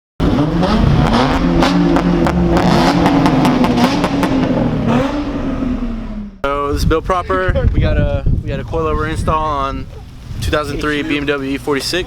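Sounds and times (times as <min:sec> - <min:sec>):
car engine revving: 0:00.2 - 0:06.6.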